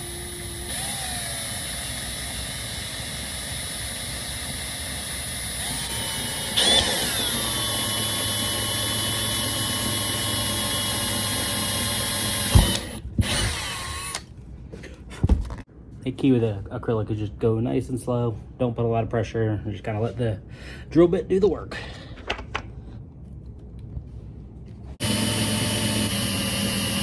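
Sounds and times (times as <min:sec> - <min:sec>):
electric drill whining: 0:00.0 - 0:14.3, 0:25.0 - 0:27.0.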